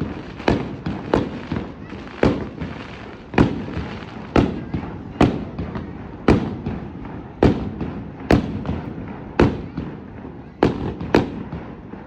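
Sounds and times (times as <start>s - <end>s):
firework pops and crackles: 0.0s - 12.0s.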